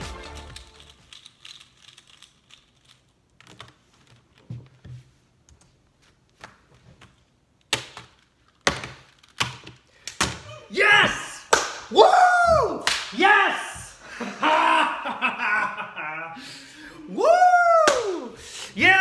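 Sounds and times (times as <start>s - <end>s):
plastic puzzle cube clicking: 0.3s - 4.2s.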